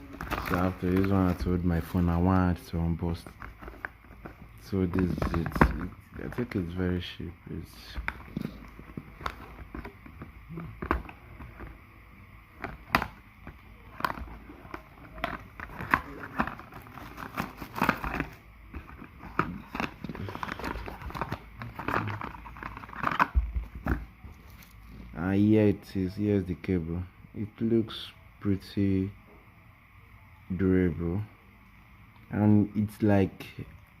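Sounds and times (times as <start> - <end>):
packaging rustling and crinkling: 0.0 - 6.8, 7.8 - 11.8, 12.5 - 25.1.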